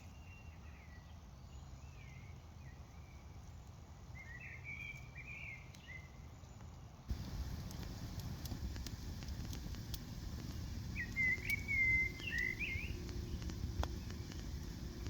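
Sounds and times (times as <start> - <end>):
bird singing gliding notes: 7.1 - 15.0
campfire crackling and popping: 7.1 - 15.0
low steady rumble: 7.1 - 15.0.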